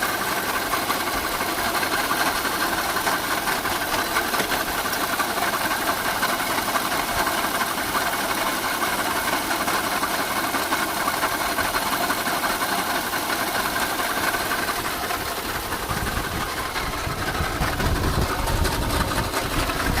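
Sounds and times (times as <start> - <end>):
engine running with rattle: 0.0 - 20.0
deep rumble: 15.8 - 20.0.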